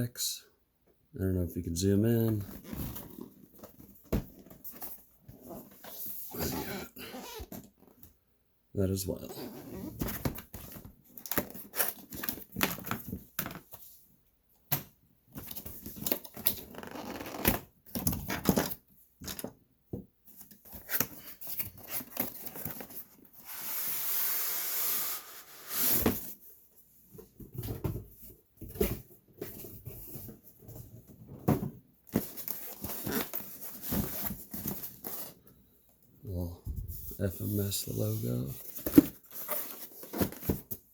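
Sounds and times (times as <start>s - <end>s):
cardboard packaging rustling: 20.4s - 23.5s, 32.1s - 35.4s, 36.8s - 40.9s.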